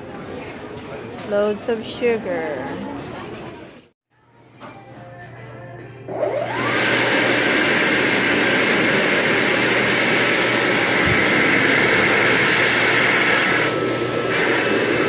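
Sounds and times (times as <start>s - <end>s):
electric blower motor whine: 6.1s - 15.0s.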